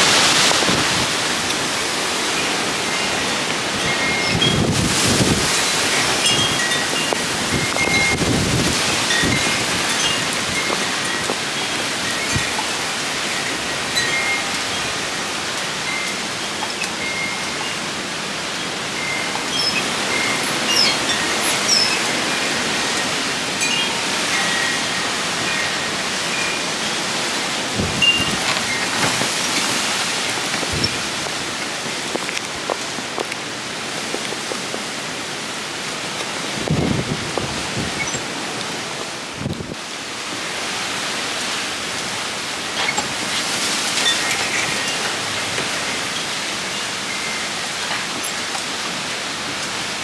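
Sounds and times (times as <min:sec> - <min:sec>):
windy thunderstorm rushing: 0:00.0 - 0:02.7, 0:03.7 - 0:11.4, 0:27.6 - 0:34.2, 0:36.4 - 0:39.8
raindrops clicking on surface: 0:00.0 - 0:14.8, 0:27.8 - 0:39.8
steady rain falling: 0:00.0 - 0:50.0.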